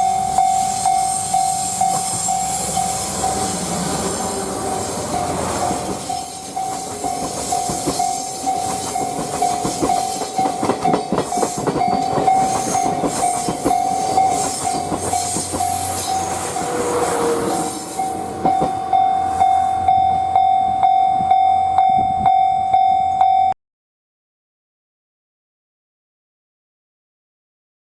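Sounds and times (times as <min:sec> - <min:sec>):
level crossing alarm ringing: 0:00.0 - 0:03.8, 0:05.0 - 0:23.6
train coaches clattering over rail joints: 0:04.0 - 0:19.3.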